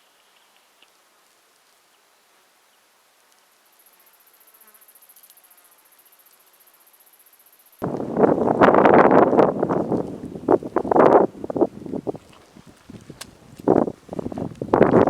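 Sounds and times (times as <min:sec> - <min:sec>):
insect buzzing: 0:03.4 - 0:07.9
wind on microphone: 0:07.8 - 0:15.0.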